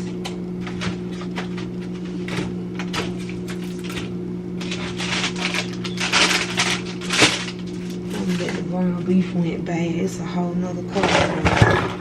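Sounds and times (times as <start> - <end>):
food containers clicking and rustling: 0.0 - 8.6
refrigerator hum: 0.0 - 12.0.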